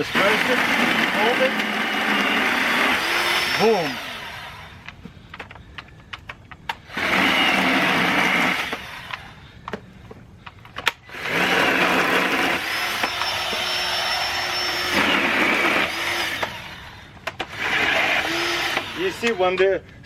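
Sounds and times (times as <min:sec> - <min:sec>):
electric chainsaw cutting sticks: 0:00.0 - 0:05.0, 0:06.7 - 0:09.4, 0:10.8 - 0:19.6
sticks clicking and knocking: 0:04.8 - 0:06.9.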